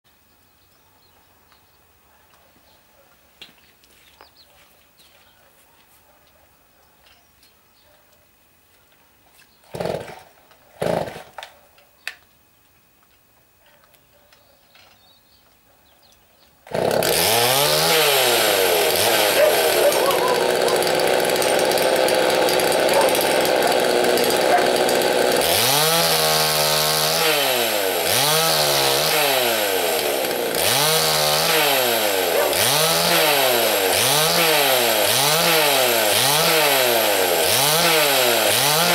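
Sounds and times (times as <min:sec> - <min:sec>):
chainsaw engine revving: 0:09.7 - 0:11.5, 0:16.6 - 0:38.9.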